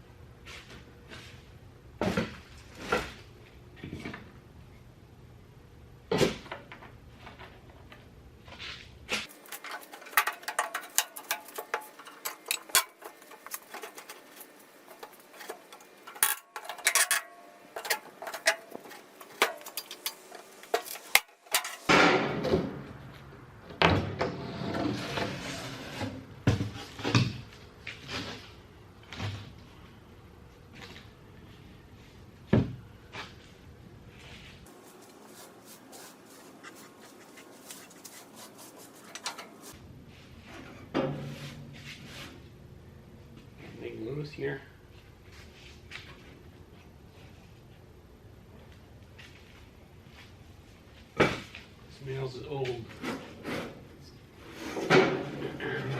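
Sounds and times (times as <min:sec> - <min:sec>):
tools and parts clattering: 0:09.2 - 0:21.9, 0:34.7 - 0:39.8.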